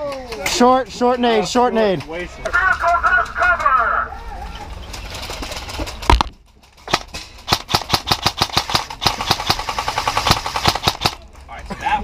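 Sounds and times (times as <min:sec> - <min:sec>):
airsoft gunshots: 0:06.9 - 0:11.2.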